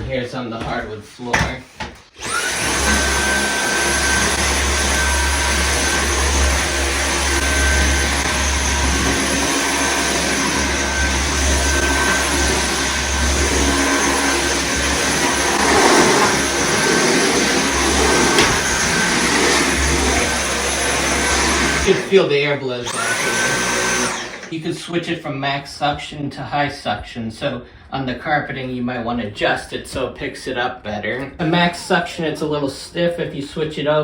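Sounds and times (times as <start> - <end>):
stick vacuum motor whining: 2.0 - 24.6.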